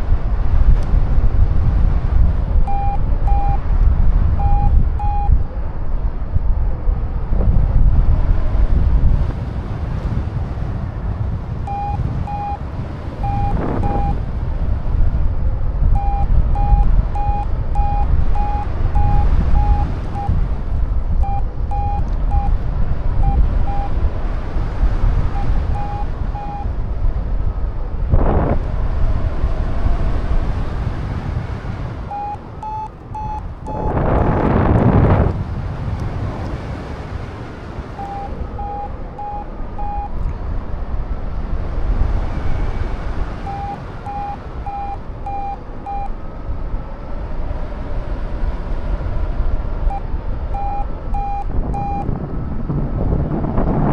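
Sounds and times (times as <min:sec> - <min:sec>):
wind buffeting microphone: 0:00.0 - 0:53.9
variometer beeping: 0:02.6 - 0:05.5, 0:11.6 - 0:14.5, 0:15.8 - 0:24.1, 0:25.1 - 0:27.0, 0:31.9 - 0:35.4, 0:37.8 - 0:40.4, 0:43.3 - 0:46.3, 0:49.8 - 0:52.2.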